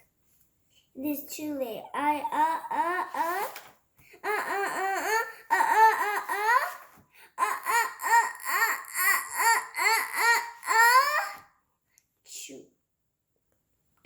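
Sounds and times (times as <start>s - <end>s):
child making drawn-out ah sounds: 1.9s - 3.6s, 4.2s - 11.5s.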